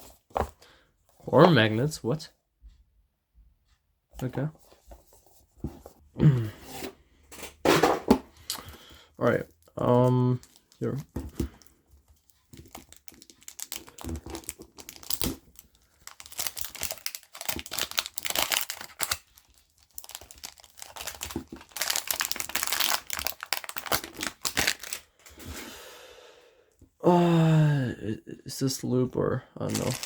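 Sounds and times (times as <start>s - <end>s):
packaging crinkling and tearing: 12.1s - 25.1s, 29.7s - 30.0s.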